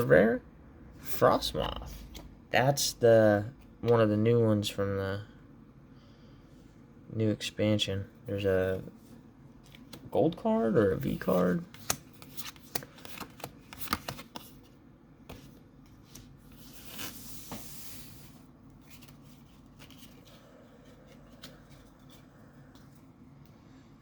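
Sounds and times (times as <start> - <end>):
card packs rustling: 10.7 - 22.9.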